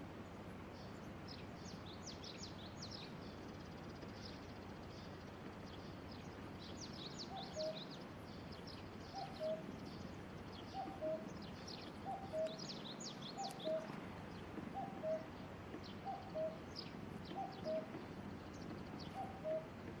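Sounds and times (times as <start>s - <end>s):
small birds chirping: 0.7s - 20.0s.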